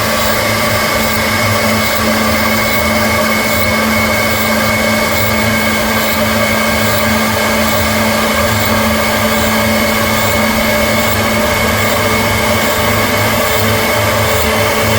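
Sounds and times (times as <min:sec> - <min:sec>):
milling machine whine: 0:00.0 - 0:14.9.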